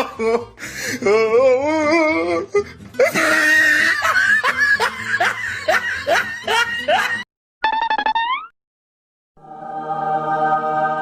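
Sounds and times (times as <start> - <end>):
music: 0.0 - 7.2, 9.4 - 11.0
exaggerated rhythmic laughing: 3.0 - 8.1.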